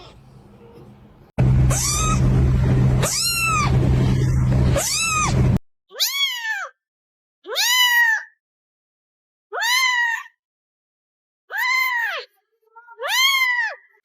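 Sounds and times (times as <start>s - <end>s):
kittens meowing: 0.0s - 2.3s, 3.0s - 5.4s
steady low hum: 0.0s - 5.6s.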